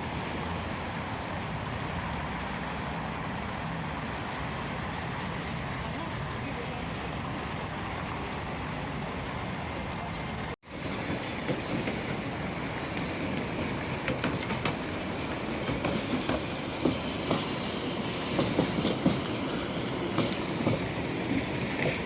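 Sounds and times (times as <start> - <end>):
tram rumbling on rails: 0.0 - 22.0
faint high wheel squeal: 10.6 - 22.0
wheel clacks and knocks: 11.0 - 22.0.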